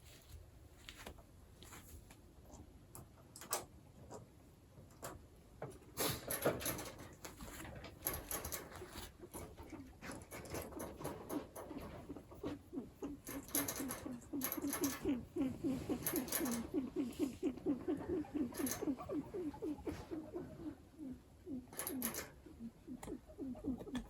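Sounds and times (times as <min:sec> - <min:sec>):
guinea pig calling: 0:12.3 - 0:24.0.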